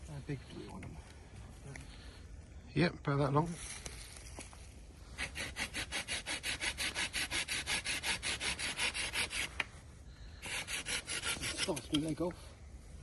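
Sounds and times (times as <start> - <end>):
hand saw cutting wood: 5.2 - 9.6, 10.4 - 12.3.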